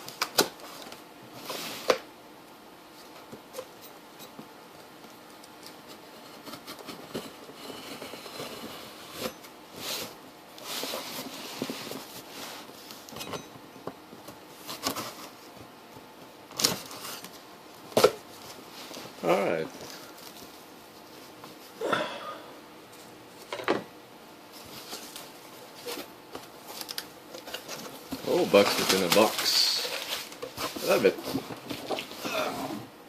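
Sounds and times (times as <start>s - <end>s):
cardboard rustling and scraping: 0.3s - 2.1s, 5.7s - 13.3s, 14.1s - 21.8s, 24.5s - 32.9s.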